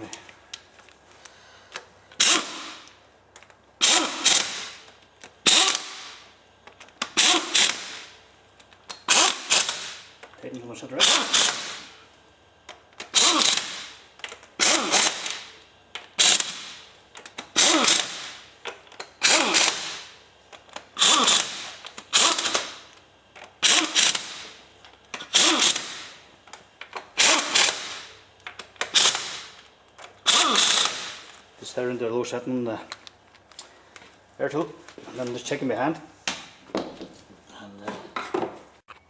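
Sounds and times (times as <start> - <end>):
air tool whirring: 1.2 - 3.0, 3.8 - 10.3, 11.0 - 12.2, 13.0 - 31.6.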